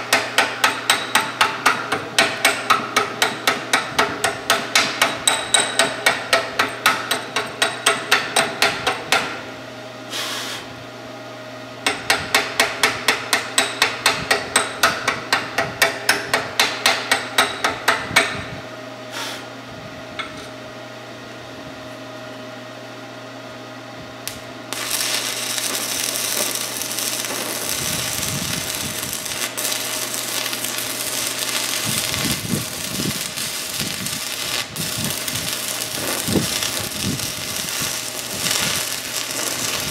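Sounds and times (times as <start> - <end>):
steady hum: 0.0 - 39.9
metal hammer strikes: 0.1 - 9.4, 11.9 - 18.4
welding arc crackling: 24.2 - 39.9.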